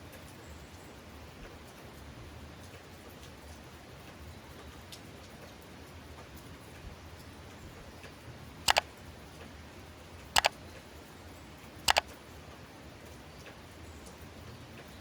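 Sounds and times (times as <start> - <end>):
light rain: 0.0 - 15.0
sharp double clicks: 8.7 - 8.9, 10.4 - 10.6, 11.9 - 12.1.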